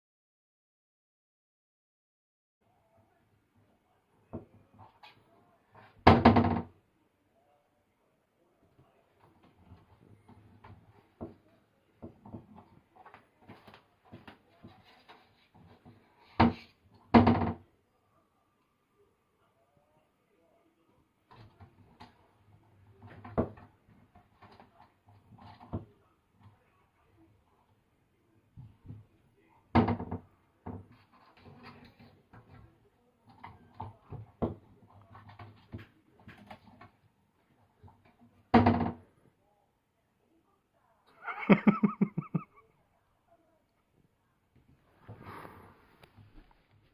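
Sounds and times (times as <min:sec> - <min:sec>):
knocking on wooden door: 0:06.0 - 0:06.7, 0:16.4 - 0:17.6, 0:29.7 - 0:30.9, 0:38.5 - 0:39.0
light clicks and scrapes: 0:12.3 - 0:16.8, 0:30.8 - 0:37.1.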